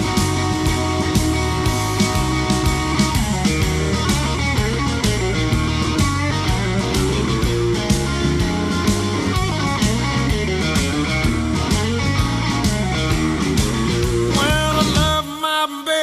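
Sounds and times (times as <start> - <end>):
blues-rock instrumental music: 0.0 - 15.3.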